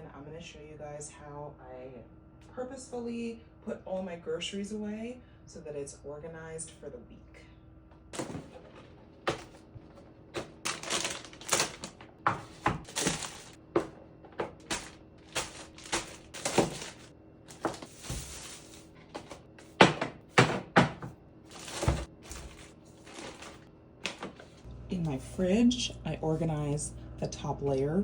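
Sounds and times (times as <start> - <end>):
packaging rustling: 8.2 - 19.7, 21.5 - 24.6
groceries knocking and thunking: 8.2 - 24.6.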